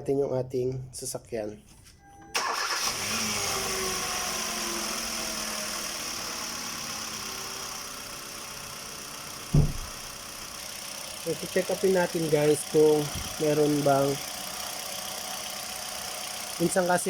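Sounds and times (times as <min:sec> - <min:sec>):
car engine idling: 0:02.4 - 0:17.0
loud thump: 0:09.5 - 0:10.1.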